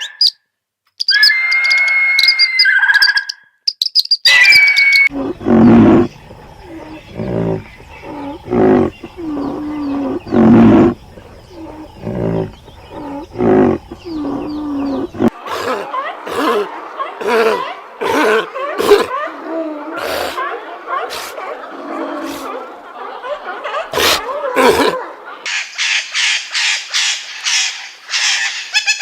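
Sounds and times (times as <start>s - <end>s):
bird chirp: 2.2s - 16.6s
big cat roaring: 5.1s - 20.4s, 23.9s - 25.0s
low grunting call: 5.1s - 20.4s.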